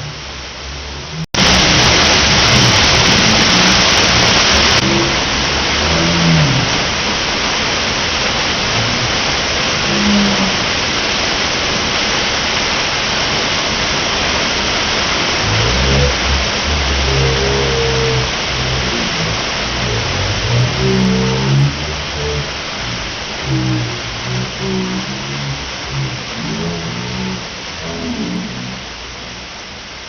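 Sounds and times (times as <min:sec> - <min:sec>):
low droning tone: 0:00.0 - 0:07.1, 0:08.7 - 0:10.8, 0:15.3 - 0:29.7
waterfall roaring: 0:00.0 - 0:30.0.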